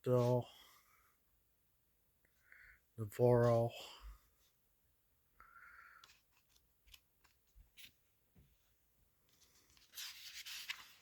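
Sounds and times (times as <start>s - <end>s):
paper rustle: 6.0s - 8.0s, 9.3s - 11.0s
paper catalog handling: 9.3s - 11.0s.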